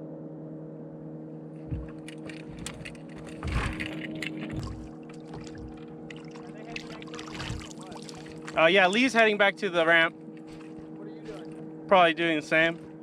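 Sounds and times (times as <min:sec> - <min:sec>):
boat motor humming: 0:01.2 - 0:13.0
low thumps: 0:01.6 - 0:08.6.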